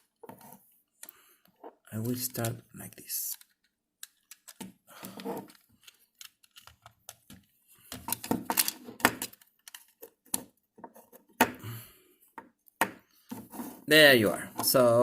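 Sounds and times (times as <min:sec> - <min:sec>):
plastic controller parts clicking: 0:02.2 - 0:10.6.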